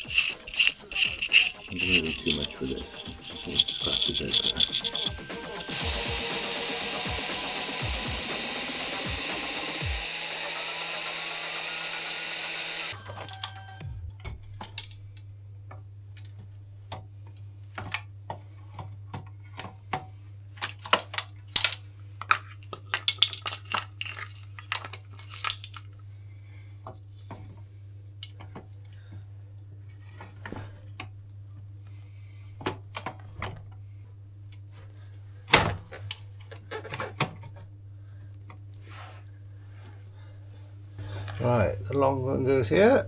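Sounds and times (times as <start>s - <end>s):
metallic clinks of small parts: 0.0s - 5.8s
power tool running: 0.0s - 13.9s.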